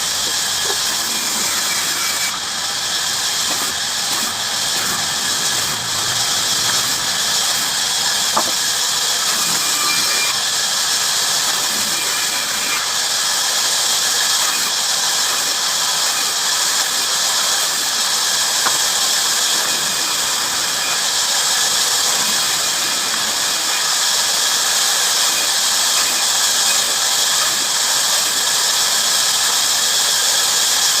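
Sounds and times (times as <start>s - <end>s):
bandsaw cutting wood: 0.0s - 31.0s.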